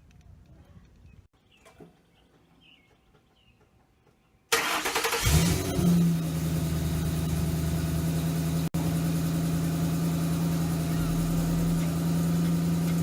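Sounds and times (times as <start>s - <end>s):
car engine idling: 4.6s - 13.0s.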